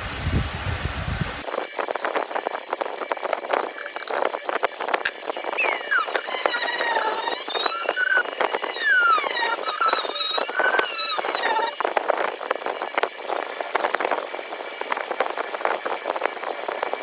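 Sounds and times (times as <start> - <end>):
screws squeaking: 1.4 - 13.1.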